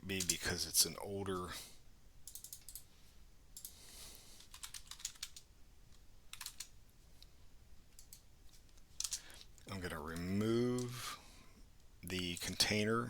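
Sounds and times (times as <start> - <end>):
faint typing on keyboard: 0.1 - 0.6, 2.2 - 11.2.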